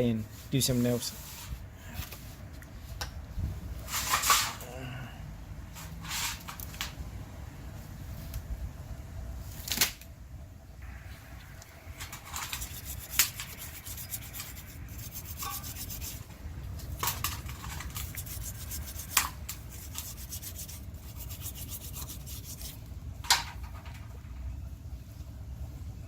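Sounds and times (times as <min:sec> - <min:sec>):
rapid scraping strokes: 0:11.8 - 0:22.9.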